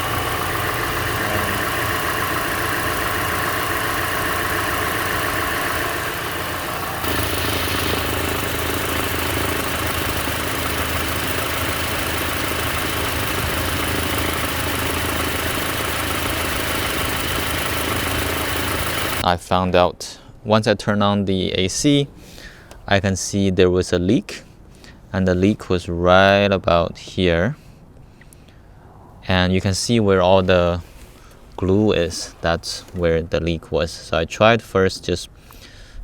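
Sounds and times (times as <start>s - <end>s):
car engine idling: 0.0s - 19.2s.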